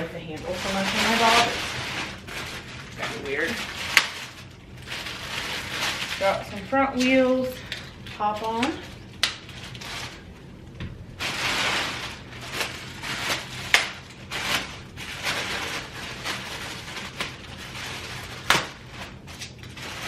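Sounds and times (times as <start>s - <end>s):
packaging rustling: 0.2s - 10.4s, 11.2s - 20.0s.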